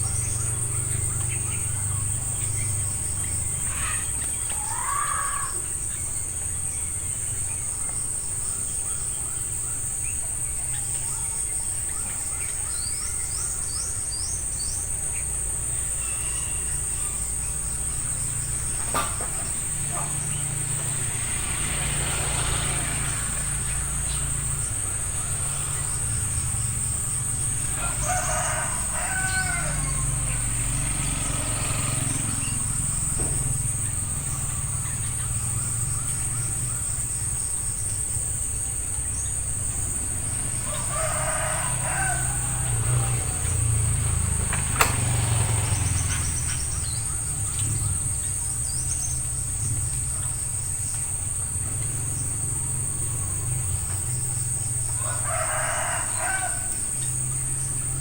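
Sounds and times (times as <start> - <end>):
rooster crowing: 22.3 - 32.9, 40.0 - 47.0, 52.1 - 58.0.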